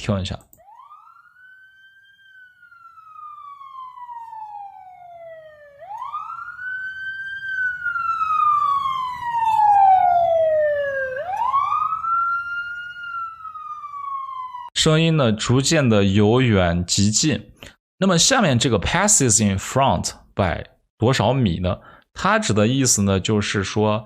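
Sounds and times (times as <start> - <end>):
police siren wailing: 0.6 - 14.8.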